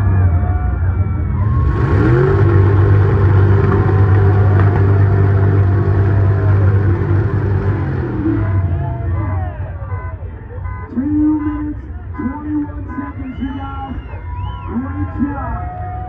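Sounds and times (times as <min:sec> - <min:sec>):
rush of noise: 0:00.0 - 0:09.8
truck engine revving: 0:00.0 - 0:10.3.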